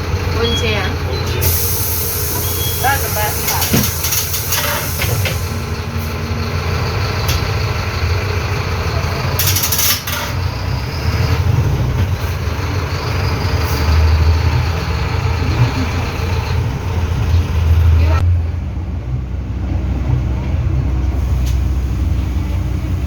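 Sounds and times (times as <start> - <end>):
bus engine rumbling: 0.0 - 23.0
air hiss: 1.4 - 5.6.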